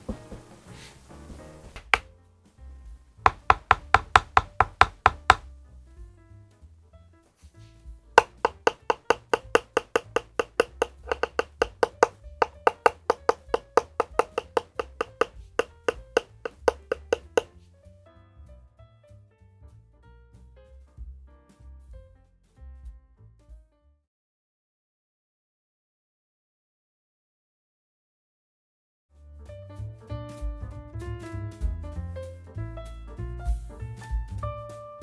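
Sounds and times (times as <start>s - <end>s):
mechanical keyboard typing: 3.3s - 5.4s, 8.2s - 17.5s.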